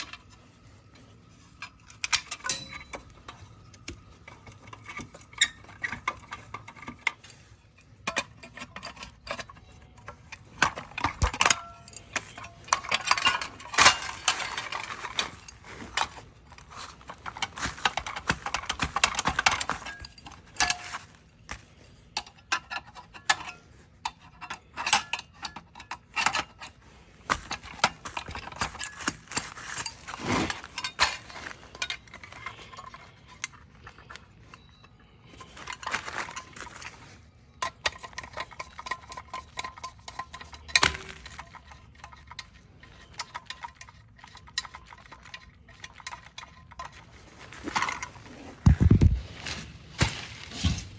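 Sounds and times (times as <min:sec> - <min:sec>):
metallic tool clicks and clinks: 0:01.6 - 0:07.4, 0:08.0 - 0:21.2.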